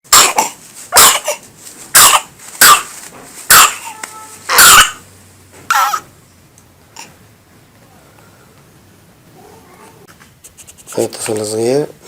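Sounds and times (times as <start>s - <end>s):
small child coughing: 0.1s - 1.4s, 2.0s - 2.3s.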